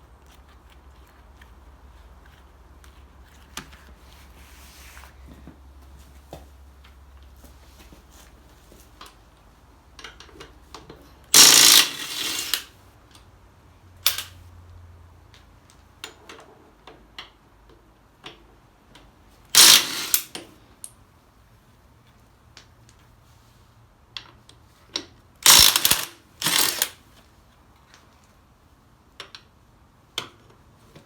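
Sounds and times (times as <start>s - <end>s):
power tool rasping: 11.4s - 12.7s, 19.6s - 20.4s, 25.4s - 27.0s.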